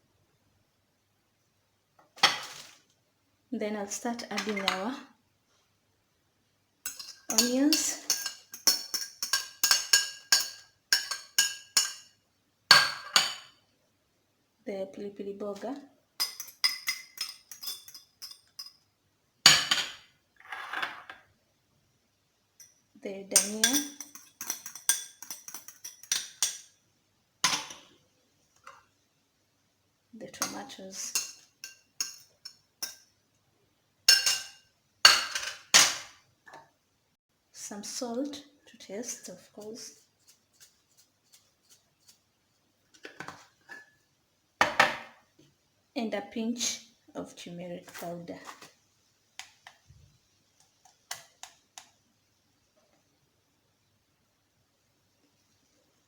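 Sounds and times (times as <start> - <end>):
utensil clinking against bowl: 6.9 - 12.1, 16.2 - 18.8, 23.4 - 26.8, 30.4 - 33.1, 34.1 - 35.7.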